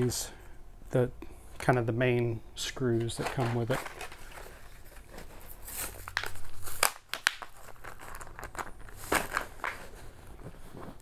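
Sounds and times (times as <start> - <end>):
plastic bag crinkling: 3.1 - 11.0.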